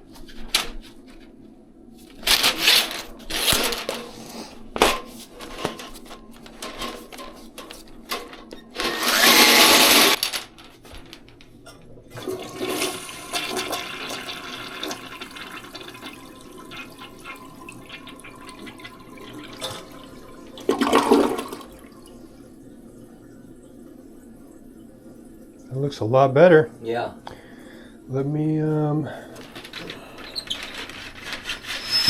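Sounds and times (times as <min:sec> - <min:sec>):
toilet flushing: 0:12.1 - 0:25.7
water running as tank refills: 0:12.1 - 0:28.1.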